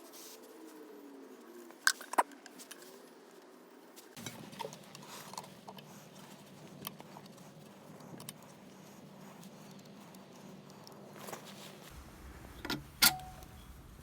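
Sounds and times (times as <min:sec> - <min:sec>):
low steady hum: 0:04.2 - 0:14.0.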